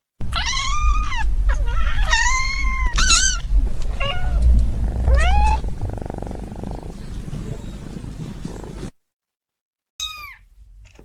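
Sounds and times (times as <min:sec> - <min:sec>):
cat meowing: 0:00.2 - 0:08.9
steady low rumble: 0:00.2 - 0:08.9.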